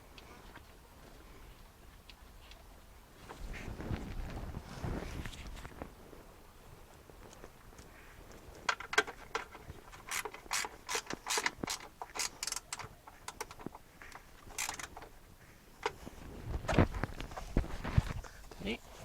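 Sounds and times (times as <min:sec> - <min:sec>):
ratchet spanner clicking: 0:09.3 - 0:13.6, 0:14.5 - 0:15.0.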